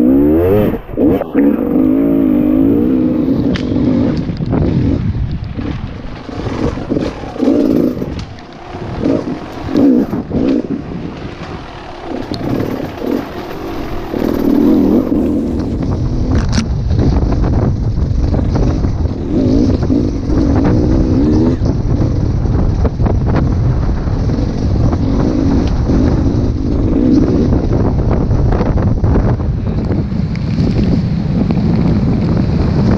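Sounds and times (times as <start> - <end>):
dirt bike engine revving: 0.0 - 32.9
wind buffeting microphone: 0.0 - 32.9.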